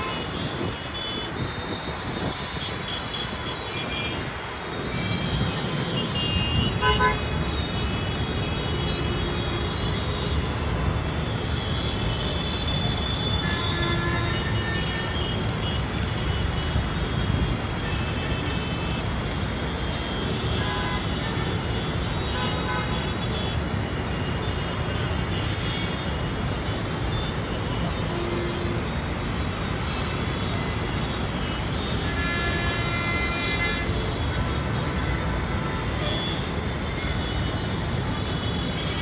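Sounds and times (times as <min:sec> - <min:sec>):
street traffic rumble: 0:00.0 - 0:39.0.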